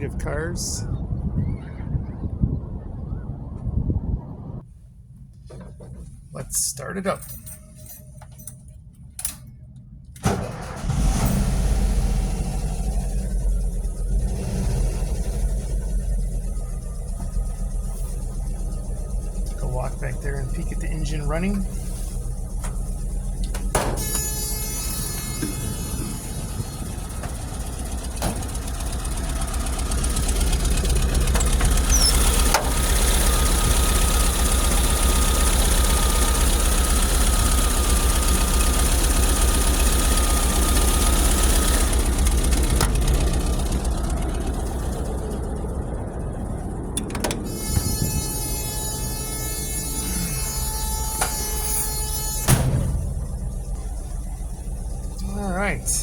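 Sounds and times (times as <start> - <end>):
engine idling: 10.1 - 56.0
thin steady whine: 12.5 - 56.0.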